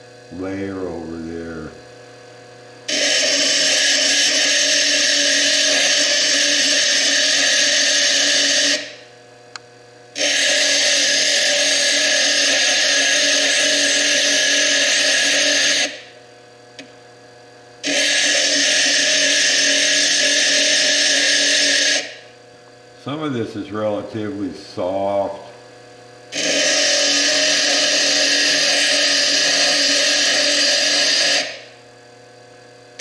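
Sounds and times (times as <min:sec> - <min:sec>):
high-pitched stone grinding: 0:02.9 - 0:09.0, 0:10.2 - 0:16.0, 0:17.8 - 0:22.2, 0:26.4 - 0:31.7.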